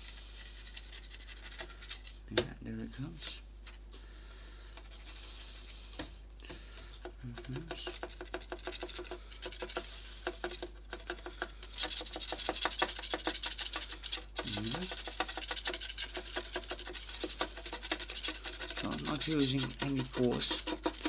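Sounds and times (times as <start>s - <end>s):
knife scraping paint: 7.2s - 21.0s.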